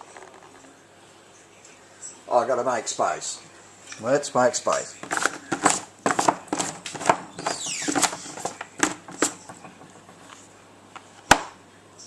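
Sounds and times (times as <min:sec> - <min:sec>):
fridge magnets clicking and rustling: 0:04.7 - 0:10.4.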